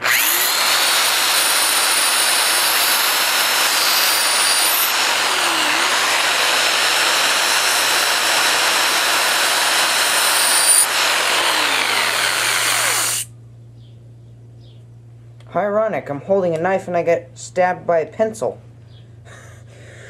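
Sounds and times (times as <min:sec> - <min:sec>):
electric drill motor whine: 0:00.0 - 0:13.3.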